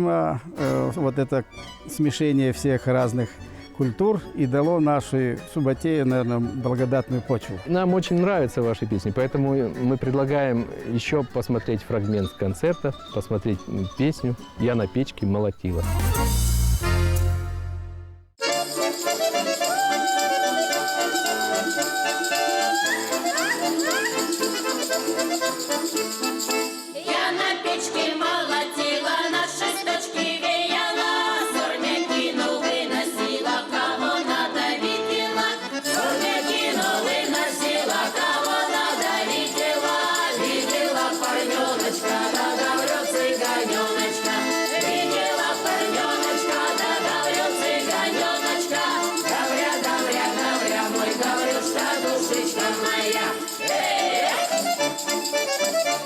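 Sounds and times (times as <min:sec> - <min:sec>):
accordion: 0:00.5 - 0:56.0
group singing: 0:20.0 - 0:23.9, 0:27.0 - 0:54.8.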